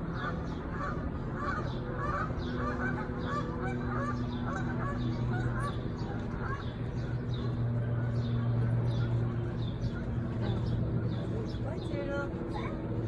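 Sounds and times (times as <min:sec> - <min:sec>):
geese honking: 0:00.2 - 0:05.6.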